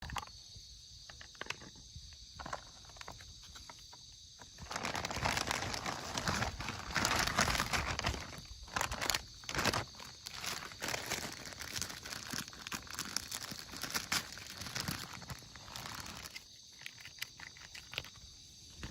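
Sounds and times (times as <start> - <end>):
packaging crinkling: 4.5 - 18.2
dry cat food crunching: 4.6 - 18.2.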